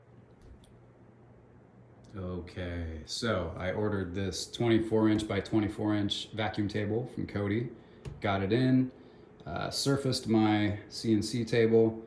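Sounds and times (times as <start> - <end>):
low steady hum: 0.0 - 12.0.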